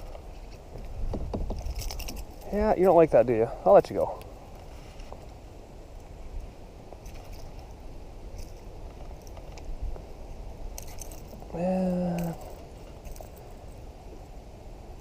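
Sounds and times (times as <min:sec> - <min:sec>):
wind rumble on microphone: 0:00.0 - 0:03.2, 0:04.3 - 0:15.0
man saying yeah: 0:11.5 - 0:12.5.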